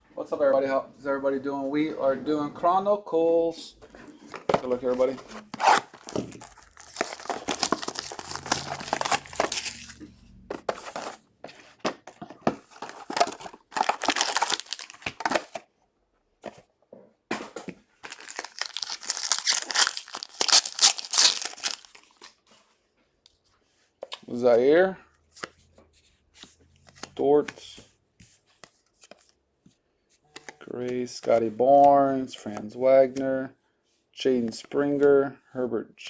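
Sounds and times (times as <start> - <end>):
plastic wrappers tearing and crinkling: 5.4 - 10.1, 12.7 - 15.6, 18.0 - 22.3.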